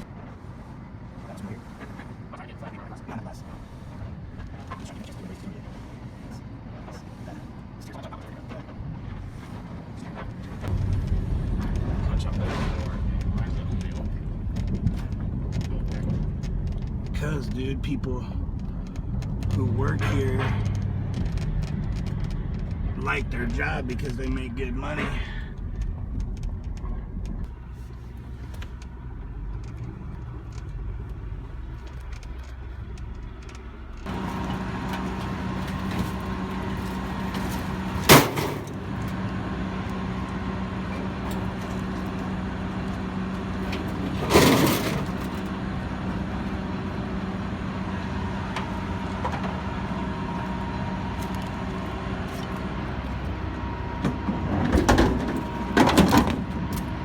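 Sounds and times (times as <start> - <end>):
heavy vehicle engine humming: 0.0 - 57.0
loud bangs: 34.1 - 39.0.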